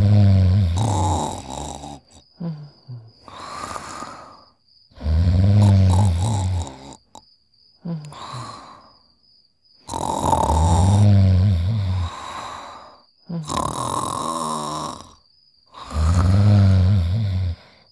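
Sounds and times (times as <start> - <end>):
cartoon dog snoring: 0.0 - 7.2, 9.8 - 17.9
breathy exhales: 2.0 - 6.9, 7.8 - 9.0, 10.6 - 13.6, 15.7 - 17.9.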